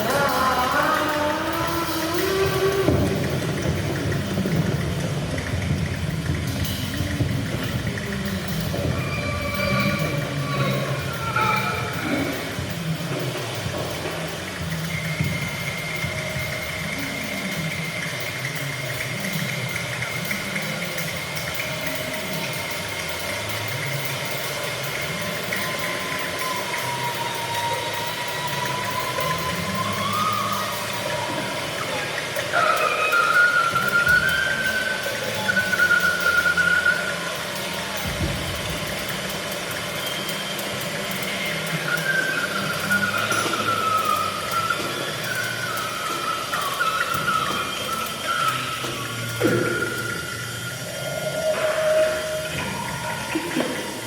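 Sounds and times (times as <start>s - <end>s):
noisy engine-like drone: 0.0s - 54.0s
steady high tone: 0.0s - 54.0s.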